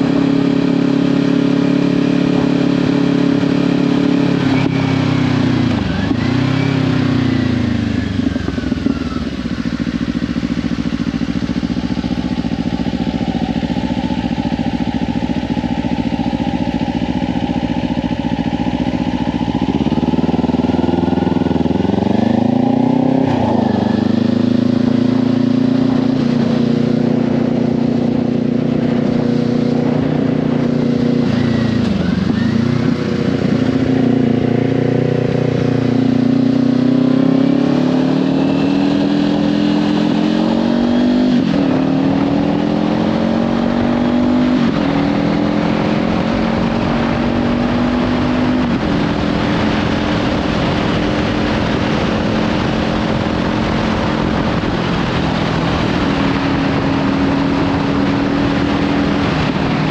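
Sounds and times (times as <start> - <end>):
motorcycle engine accelerating: 0.0 - 59.9
wind noise on microphone: 0.0 - 59.9.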